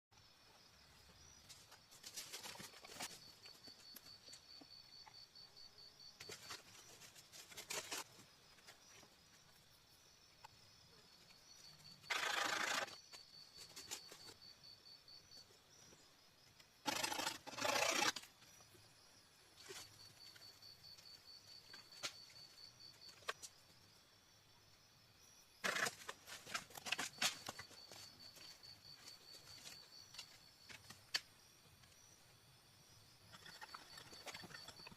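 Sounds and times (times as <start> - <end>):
wood and moss rustling and crunching: 25.7 - 31.2.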